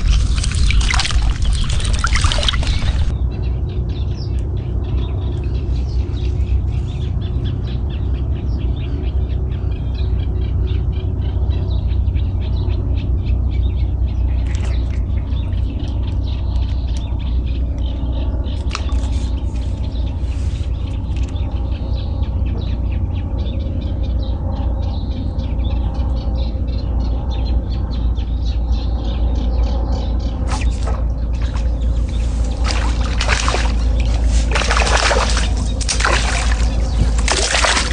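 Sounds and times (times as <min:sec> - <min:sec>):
loud steady low rumble: 0:00.0 - 0:37.9
small birds chirping: 0:00.0 - 0:37.9.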